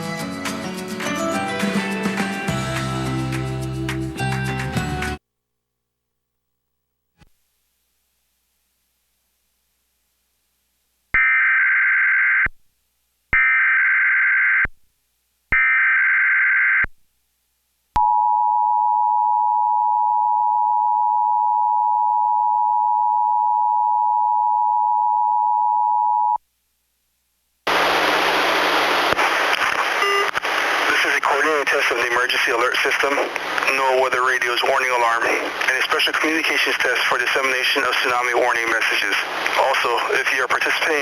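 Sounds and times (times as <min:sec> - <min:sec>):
hissy relayed audio feed: 0:26.6 - 0:41.0.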